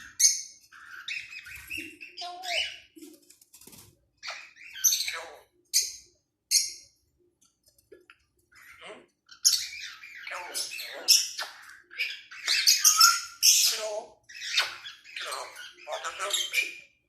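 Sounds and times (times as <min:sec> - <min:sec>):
parrot squawking and chattering: 0:00.0 - 0:03.0, 0:04.2 - 0:07.0, 0:08.2 - 0:17.0.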